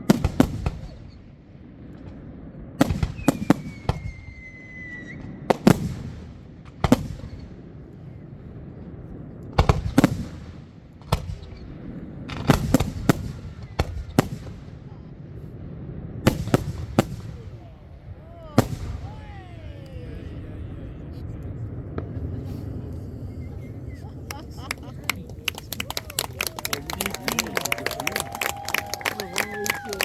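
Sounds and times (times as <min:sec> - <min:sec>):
fireworks bangs: 0:00.0 - 0:30.0
falling firework whistle: 0:03.1 - 0:05.4.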